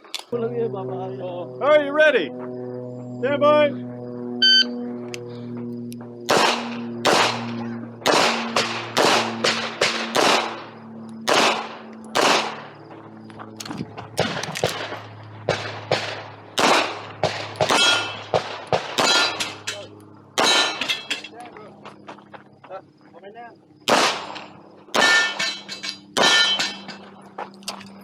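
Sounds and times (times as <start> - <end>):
handgun shots: 6.3 - 7.4, 8.0 - 10.6, 11.2 - 12.6, 15.6 - 19.8, 20.4 - 20.9, 23.9 - 26.8
metallic ring of target: 17.6 - 18.4, 19.0 - 21.4, 24.2 - 27.3.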